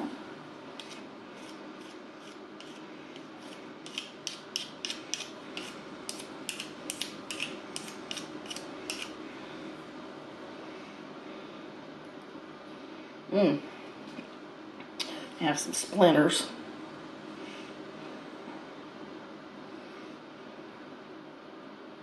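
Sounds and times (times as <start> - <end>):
wooden chopsticks rasping together: 0.8 - 9.1.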